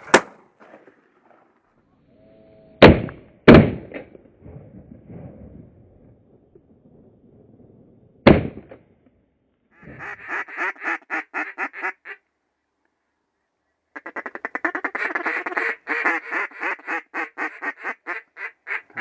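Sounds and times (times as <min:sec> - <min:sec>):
shotgun shot: 0:02.8 - 0:05.4, 0:08.2 - 0:08.8
duck quacks: 0:09.8 - 0:12.2, 0:14.0 - 0:19.0.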